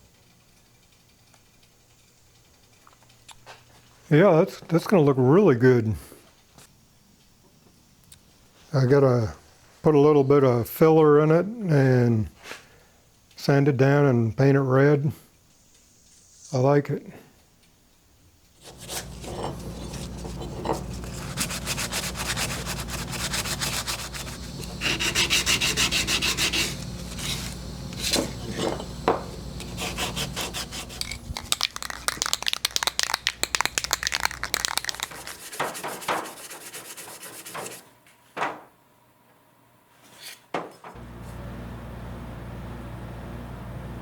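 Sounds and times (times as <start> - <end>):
sanding strokes on sheet metal: 18.6 - 31.4, 33.8 - 37.9
motor hum: 18.6 - 32.1, 41.0 - 44.0.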